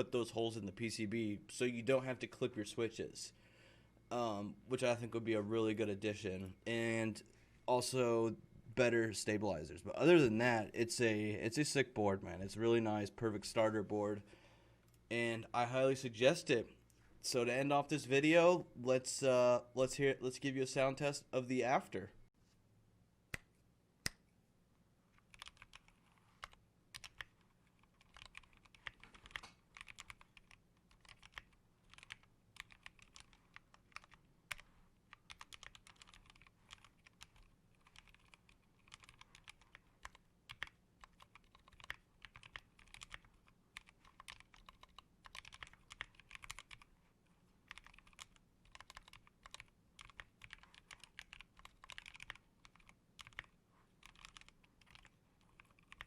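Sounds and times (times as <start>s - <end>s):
mechanical keyboard typing: 25.2s - 46.9s, 47.7s - 56.0s.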